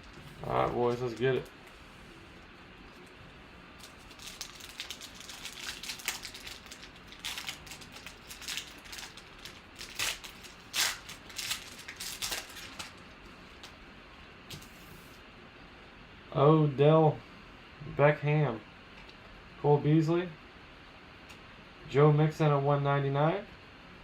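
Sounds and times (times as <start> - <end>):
foil wrapper tearing and crinkling: 0.0 - 1.5, 3.8 - 13.7.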